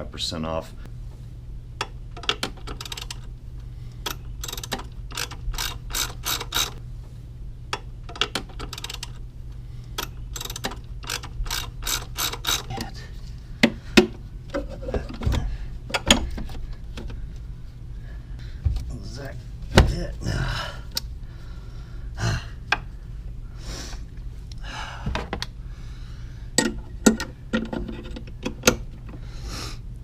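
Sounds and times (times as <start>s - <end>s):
socket ratchet clicking: 1.8s - 3.3s, 4.0s - 6.8s, 7.8s - 9.2s, 10.0s - 12.7s.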